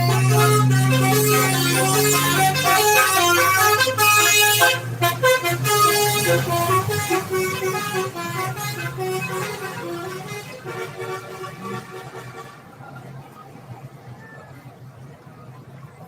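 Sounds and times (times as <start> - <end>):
multi-tone air horn melody: 0.0 - 12.7.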